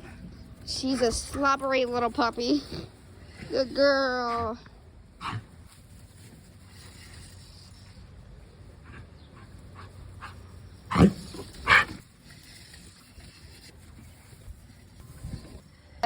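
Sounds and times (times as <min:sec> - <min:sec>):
dog barking: 0:10.9 - 0:11.9.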